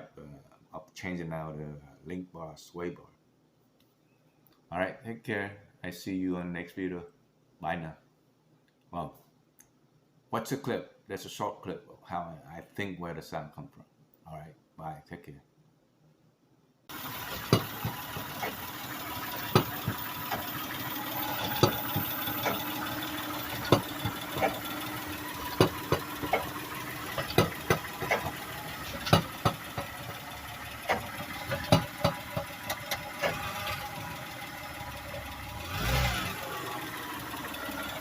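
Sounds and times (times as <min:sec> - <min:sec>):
van engine idling: 0:16.9 - 0:38.0
sharp knocks under van: 0:17.3 - 0:18.5, 0:27.2 - 0:29.9, 0:30.9 - 0:32.5.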